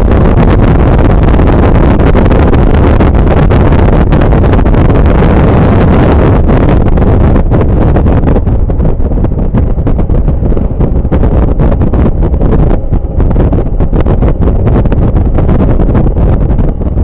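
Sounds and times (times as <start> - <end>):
diesel bus engine rumbling: 0.0 - 17.0.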